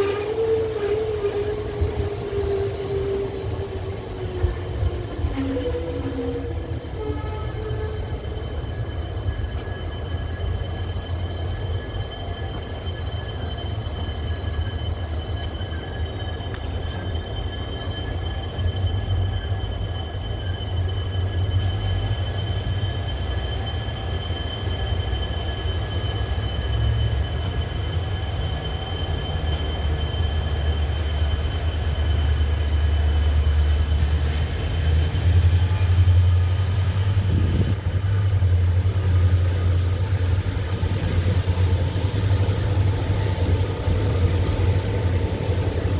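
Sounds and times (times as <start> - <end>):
high whine rising in pitch: 0.0 - 12.2
train deep rumble: 0.0 - 45.9.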